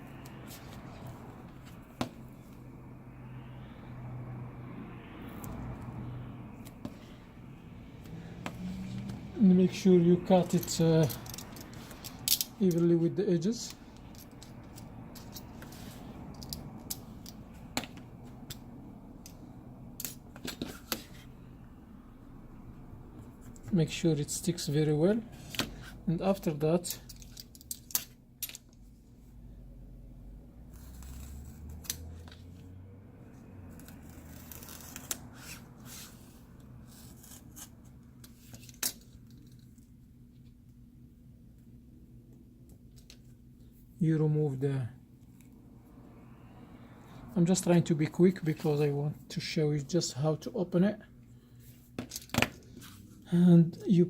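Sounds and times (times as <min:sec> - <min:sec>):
scissors snipping tape: 0:30.8 - 0:32.2, 0:33.8 - 0:35.6.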